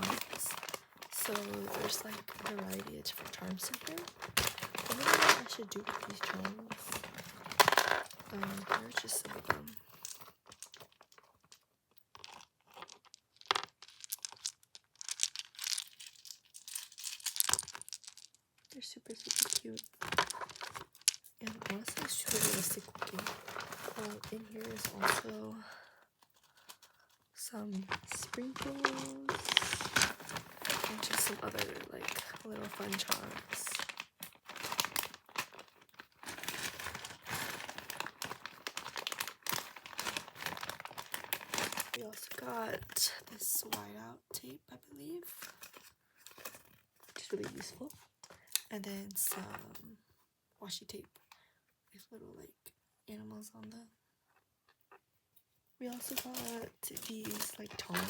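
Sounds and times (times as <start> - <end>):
plastic bag crinkling: 0.0 - 43.1, 55.8 - 58.0.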